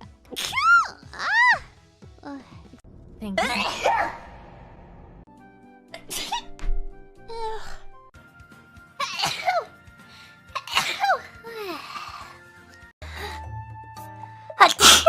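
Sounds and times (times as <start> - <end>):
quiet background music: 0.0 - 2.8, 5.4 - 15.0
women sneezing: 9.0 - 9.7, 10.6 - 11.9, 14.6 - 15.0.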